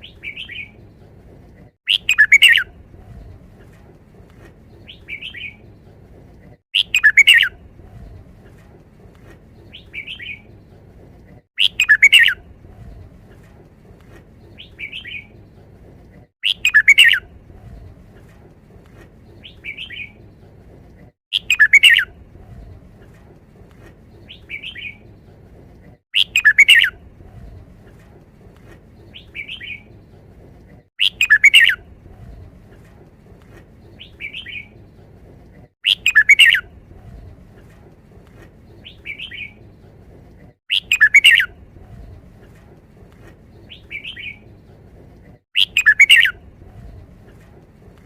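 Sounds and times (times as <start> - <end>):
soft bird chirp: 0.0 - 1.1, 1.9 - 3.7, 4.4 - 6.0, 6.8 - 8.6, 9.2 - 10.8, 11.6 - 13.5, 16.4 - 18.3, 19.0 - 20.6, 21.3 - 23.2, 26.2 - 28.0, 33.5 - 35.1, 35.8 - 39.8, 40.7 - 42.6, 45.6 - 47.4.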